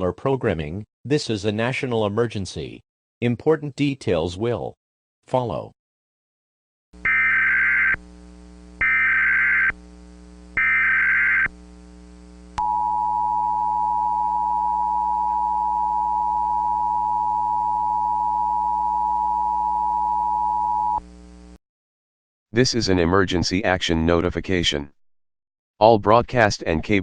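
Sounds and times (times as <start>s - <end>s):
screeching data bursts: 7.0s - 8.0s, 8.8s - 9.8s, 10.6s - 11.5s.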